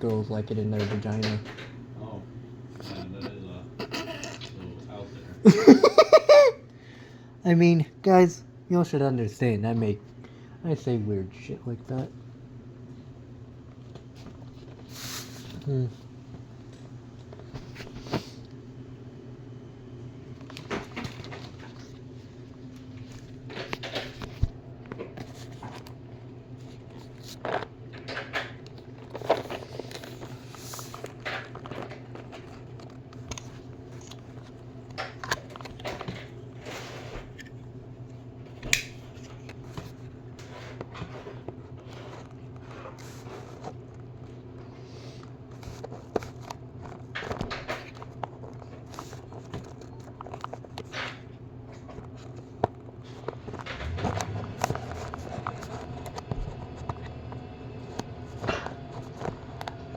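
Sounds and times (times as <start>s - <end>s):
low hum: 53.5s - 59.9s.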